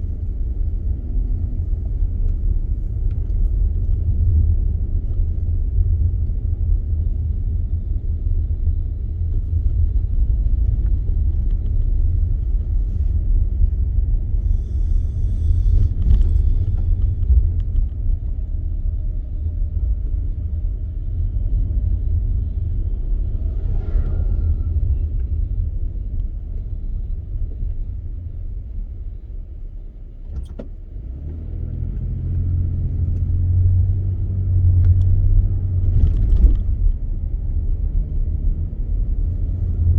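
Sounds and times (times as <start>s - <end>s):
car road and engine rumble: 0.0s - 39.9s.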